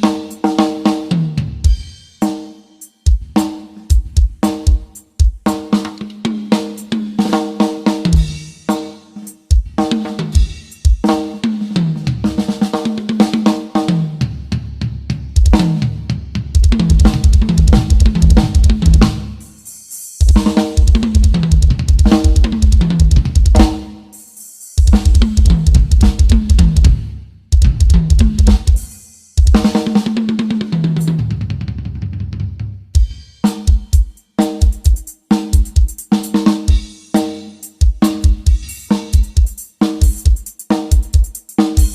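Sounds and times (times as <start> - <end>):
drum kit solo: 0.0 - 41.9
fast double bass drum runs: 8.0 - 8.7, 11.7 - 19.6, 20.2 - 23.9, 24.8 - 37.0, 37.8 - 41.9.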